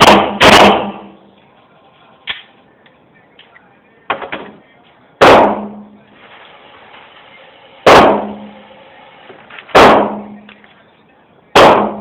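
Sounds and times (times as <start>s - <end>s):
pistol shots: 0.0s - 1.2s, 5.2s - 6.0s, 7.9s - 8.5s, 9.7s - 10.5s, 11.5s - 12.0s.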